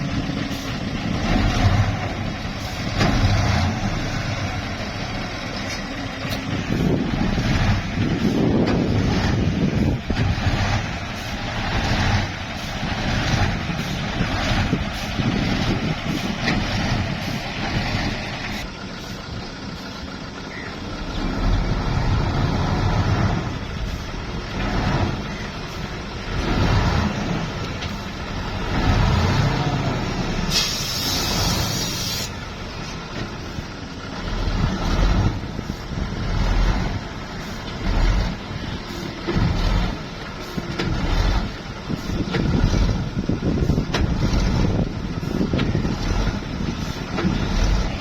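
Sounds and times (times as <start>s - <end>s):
diesel truck engine rumbling: 0.0s - 48.0s
air hiss: 30.5s - 32.4s.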